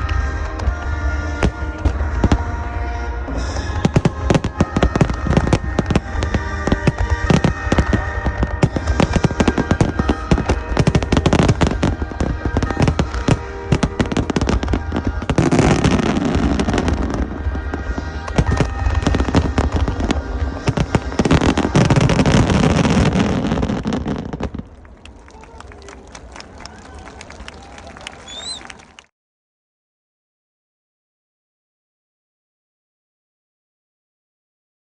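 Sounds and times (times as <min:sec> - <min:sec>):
fireworks crackling: 0:00.0 - 0:29.0
music playing: 0:00.0 - 0:29.0
fireworks booming: 0:00.4 - 0:24.9.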